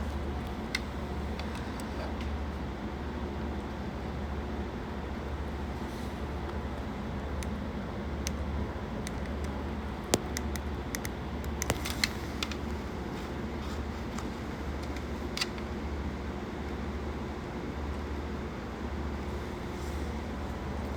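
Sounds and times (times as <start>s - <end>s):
air compressor humming: 8.1s - 13.2s
sharp clicks and taps: 10.2s - 12.6s.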